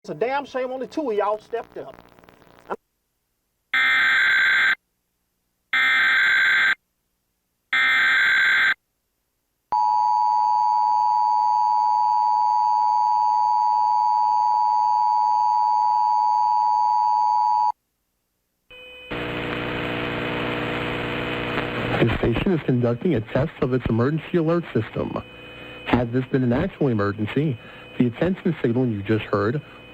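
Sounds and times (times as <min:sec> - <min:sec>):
digital header data bursts: 0:00.2 - 0:02.7, 0:22.2 - 0:29.9
two-tone alarm: 0:03.8 - 0:04.8, 0:05.8 - 0:06.8, 0:07.8 - 0:08.8, 0:22.8 - 0:29.9.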